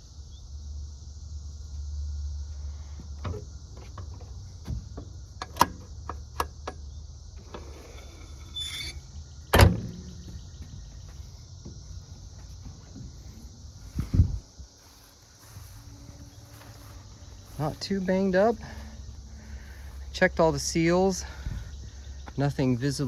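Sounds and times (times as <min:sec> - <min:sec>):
insects chirping: 0:00.0 - 0:23.0
metal panel bang shut: 0:07.6 - 0:10.4
metal panel knocks and clicks: 0:09.5 - 0:10.4.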